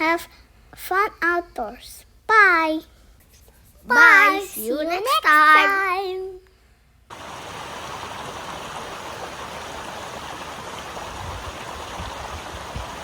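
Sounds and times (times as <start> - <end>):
flowing water: 7.1 - 13.0.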